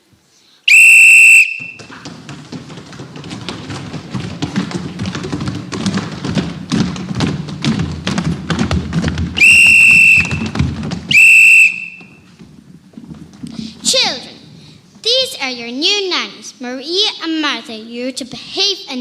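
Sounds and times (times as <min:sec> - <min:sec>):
whistle blasts: 0:00.7 - 0:01.9, 0:09.4 - 0:10.5, 0:11.1 - 0:12.3
children's footsteps on hard floor: 0:00.7 - 0:15.6.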